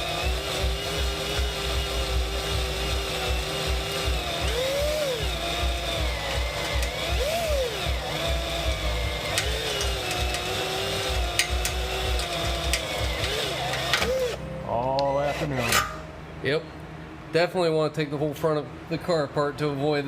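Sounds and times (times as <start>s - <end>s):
drill boring through metal: 0.0s - 14.4s, 15.0s - 16.0s.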